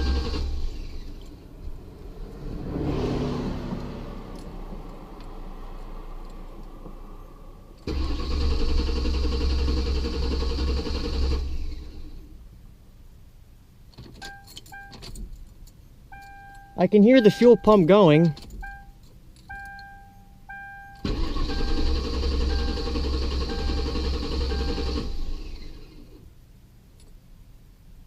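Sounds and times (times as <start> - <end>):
car engine cranking on starter: 0.0 - 1.8, 7.8 - 12.3, 20.9 - 26.2
electronic dash chimes: 14.2 - 15.1, 16.1 - 25.0.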